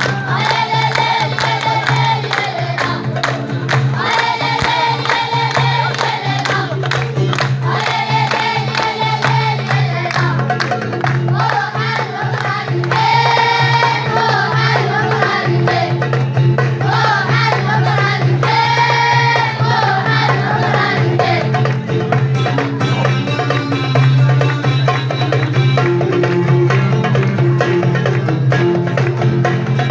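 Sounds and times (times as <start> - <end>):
group singing folk song: 0.0 - 22.2
drum percussion: 0.0 - 29.9.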